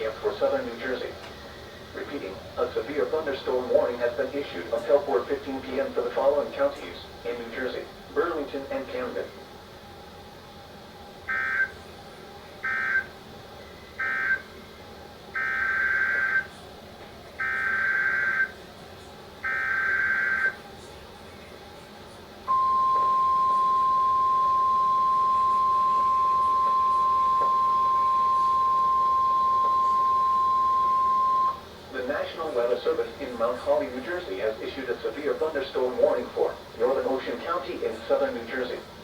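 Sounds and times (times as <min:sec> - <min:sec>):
steady alarm tone: 0:11.2 - 0:11.8, 0:12.6 - 0:13.2, 0:13.9 - 0:14.6, 0:15.3 - 0:16.5, 0:17.4 - 0:18.6, 0:19.4 - 0:20.6, 0:22.5 - 0:31.8.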